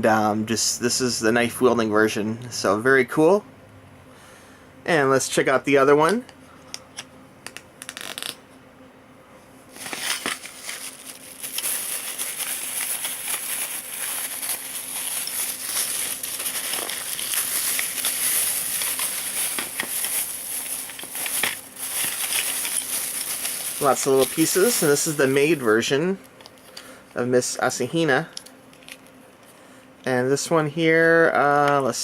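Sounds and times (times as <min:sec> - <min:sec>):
crinkly packaging rustling: 0:09.7 - 0:25.8.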